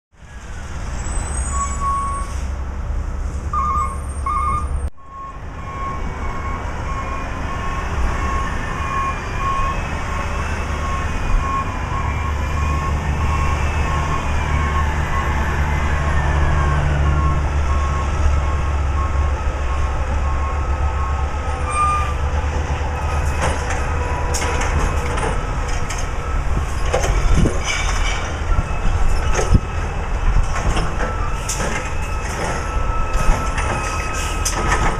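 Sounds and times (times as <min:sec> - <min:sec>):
reversing alarm beeping: 0:03.5 - 0:22.3, 0:22.9 - 0:27.5, 0:28.4 - 0:34.9
knocks and clanks: 0:23.1 - 0:34.9.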